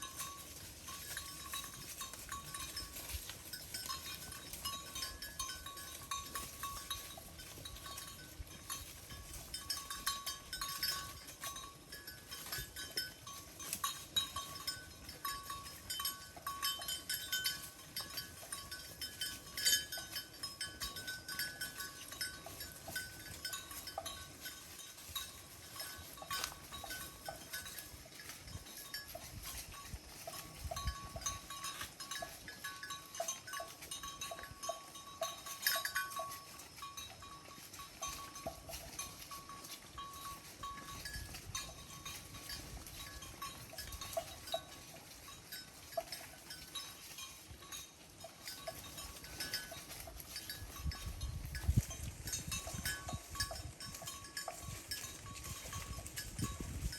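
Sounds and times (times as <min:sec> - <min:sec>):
cowbells clinking: 0:00.0 - 0:56.9.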